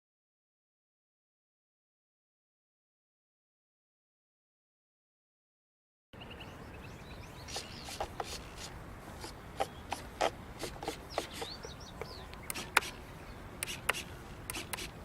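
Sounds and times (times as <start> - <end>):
faint bird chirps: 6.2 - 8.6, 10.8 - 14.2
outdoor hiss: 7.2 - 15.0.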